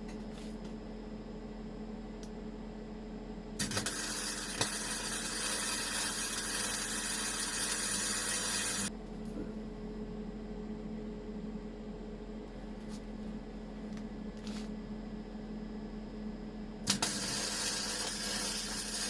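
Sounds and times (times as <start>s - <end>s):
welding arc crackling hiss: 3.6s - 8.9s, 16.9s - 19.0s
welding sharp pops: 3.6s - 8.9s, 16.9s - 19.0s
welder humming: 3.6s - 9.5s, 16.8s - 19.0s.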